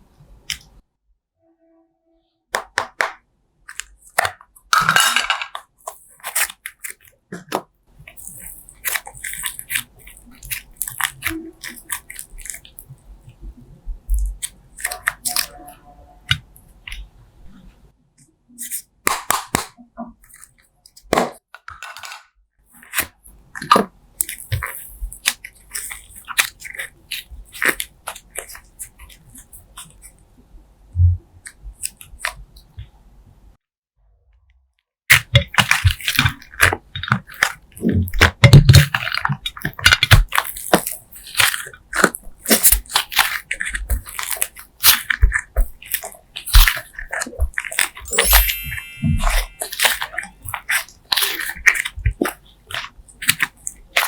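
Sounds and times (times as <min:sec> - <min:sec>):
slime squelching and crackling: 0:05.7 - 0:17.7, 0:22.7 - 0:30.3, 0:31.4 - 0:32.9, 0:35.1 - 0:54.0.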